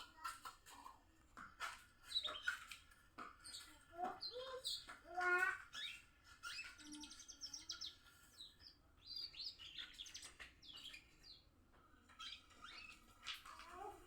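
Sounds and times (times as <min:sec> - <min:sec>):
canary twittering: 0:03.5 - 0:11.4, 0:12.1 - 0:13.9.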